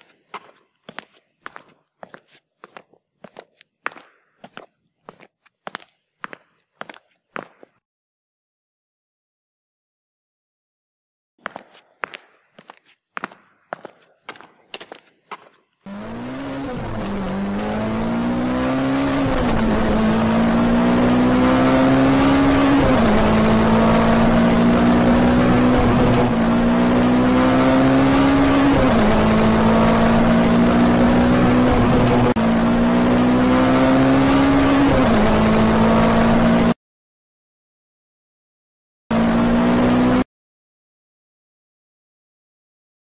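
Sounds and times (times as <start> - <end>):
car engine shifting gears: 15.9 - 36.8, 39.1 - 40.2.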